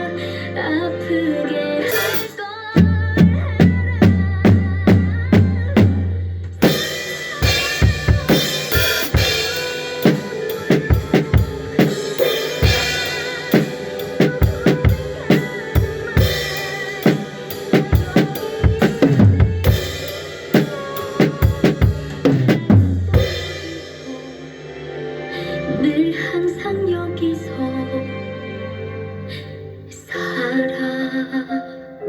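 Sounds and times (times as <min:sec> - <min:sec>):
pop ballad backing track: 0:00.0 - 0:28.2
drum kit playing: 0:01.8 - 0:25.4.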